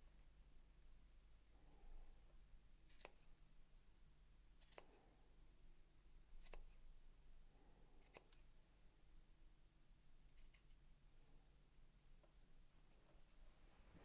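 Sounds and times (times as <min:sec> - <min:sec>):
scissors cutting fabric: 0:02.8 - 0:03.3, 0:04.6 - 0:05.0, 0:06.4 - 0:06.8, 0:08.0 - 0:08.4, 0:10.3 - 0:10.8.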